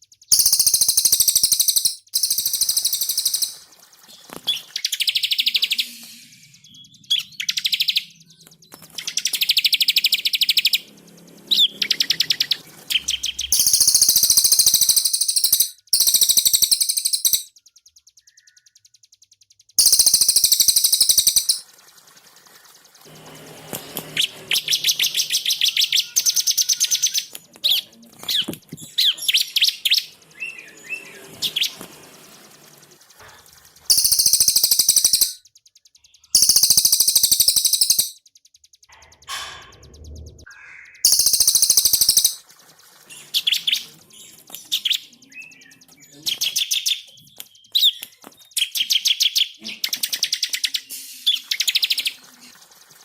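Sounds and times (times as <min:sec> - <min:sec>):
songbirds trilling: 0:00.0 - 0:05.8, 0:06.8 - 0:17.5, 0:19.8 - 0:23.0, 0:33.9 - 0:35.4, 0:36.3 - 0:38.2, 0:40.2 - 0:48.0.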